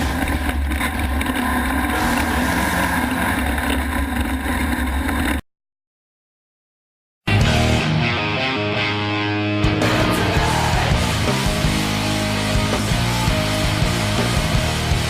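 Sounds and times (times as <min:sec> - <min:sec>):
vehicle engine droning: 0:00.0 - 0:05.4, 0:09.8 - 0:15.0.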